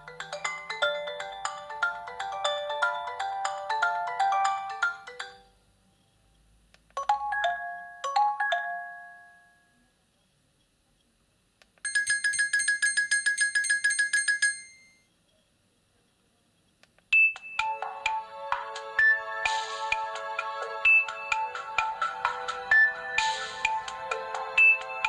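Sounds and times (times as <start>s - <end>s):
phone melody: 0.0s - 5.6s, 7.0s - 9.6s, 17.6s - 25.0s.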